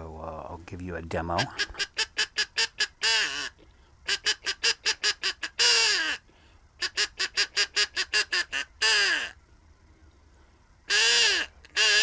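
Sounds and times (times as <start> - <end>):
crow caller caws: 8.4 - 9.4, 10.9 - 12.0.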